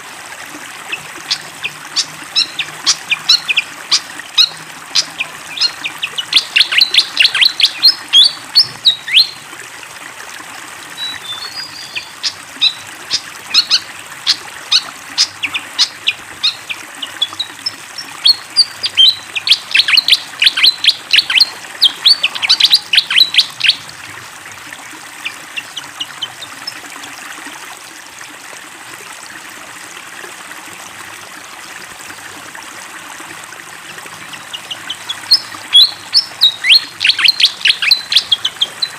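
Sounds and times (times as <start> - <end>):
running water: 0.0 - 38.9
bird chirping in rapid runs: 0.9 - 9.4, 11.0 - 23.8, 34.2 - 38.9.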